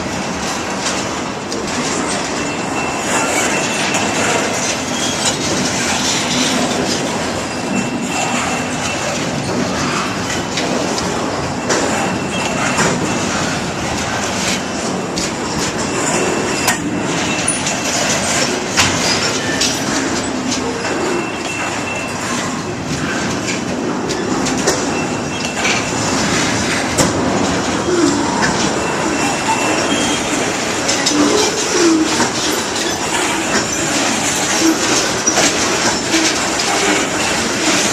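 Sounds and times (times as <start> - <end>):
freight train rumbling past: 0.0 - 37.9
wheels clicking over rail joints: 0.0 - 37.9
high wheel squeal: 1.9 - 10.1, 11.2 - 23.2, 27.7 - 37.9.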